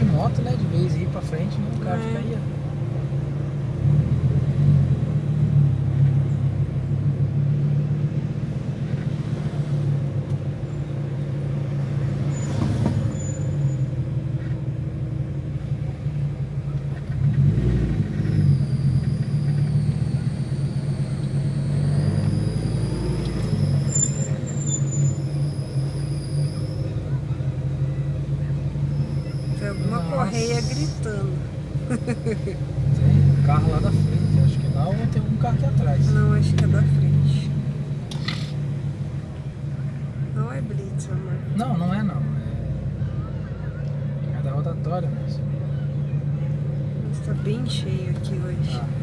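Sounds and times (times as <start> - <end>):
car engine low hum: 0.0 - 49.0.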